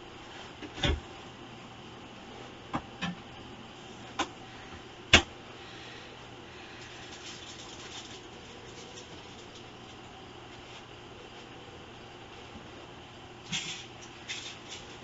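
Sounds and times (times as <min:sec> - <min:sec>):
light ticking and scratching: 0:06.8 - 0:10.1.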